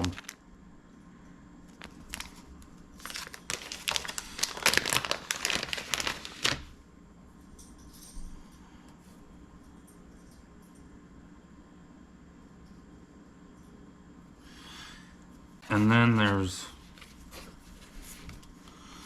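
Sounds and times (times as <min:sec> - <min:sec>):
plastic packaging crinkling: 0:00.0 - 0:00.4, 0:01.7 - 0:06.8.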